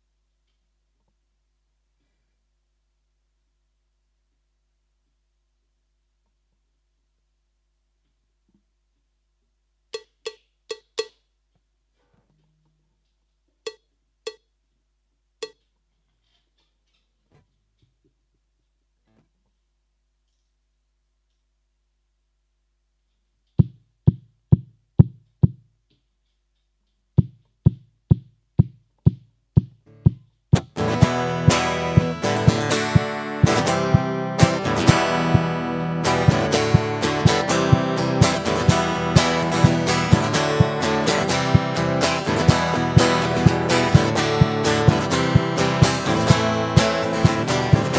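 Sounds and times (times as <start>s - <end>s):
stomp box thumps: 23.6s - 25.6s, 27.2s - 30.8s
acoustic guitar strumming: 29.9s - 47.9s.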